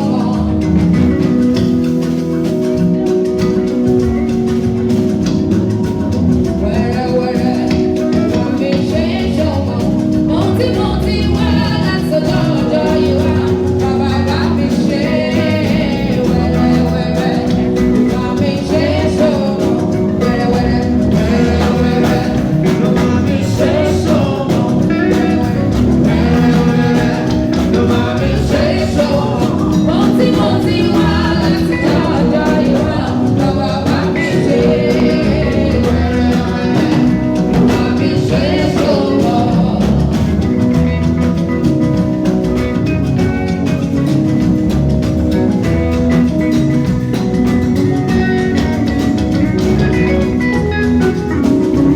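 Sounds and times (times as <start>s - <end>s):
person singing: 0.0s - 41.4s
live band playing: 0.0s - 51.9s.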